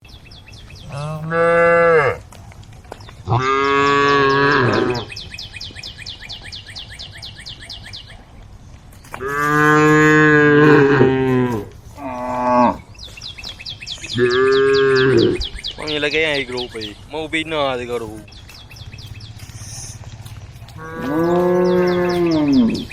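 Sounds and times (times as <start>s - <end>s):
cows mooing: 0.9s - 2.2s, 3.3s - 5.2s, 9.2s - 12.9s, 14.1s - 15.5s, 20.6s - 22.9s.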